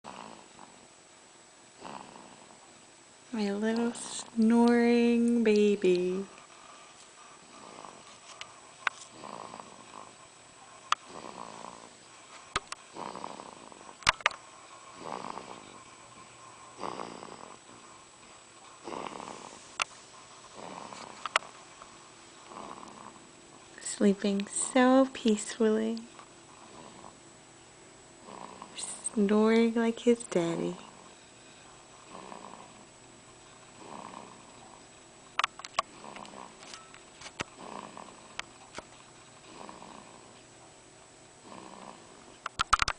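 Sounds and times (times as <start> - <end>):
baby snoring: 0.1 - 0.9, 1.8 - 2.7, 7.4 - 23.7, 26.5 - 27.2, 28.2 - 29.4, 30.4 - 31.2, 31.9 - 32.9, 33.7 - 34.8, 35.8 - 36.7, 37.4 - 38.4, 39.4 - 40.4, 41.4 - 42.3
sharp clicks: 42.4 - 42.9.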